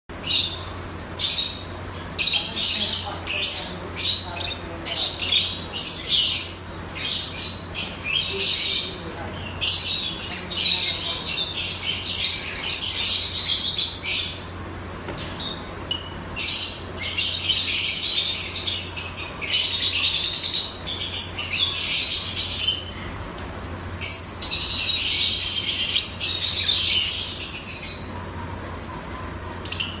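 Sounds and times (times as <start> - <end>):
parrots chattering and squawking: 0.2 - 23.2, 23.8 - 28.5, 29.3 - 30.0.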